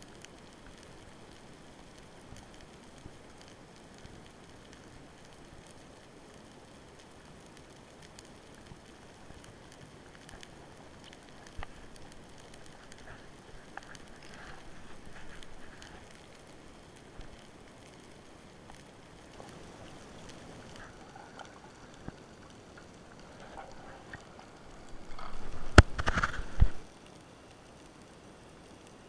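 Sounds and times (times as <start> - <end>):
sharp underwater clicks and crackles: 0.0 - 29.0
swishing water rushes: 19.2 - 26.9.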